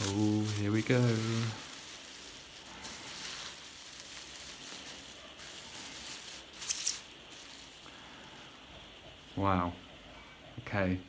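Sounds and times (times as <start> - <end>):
packaging rustling and crinkling: 0.0 - 8.7.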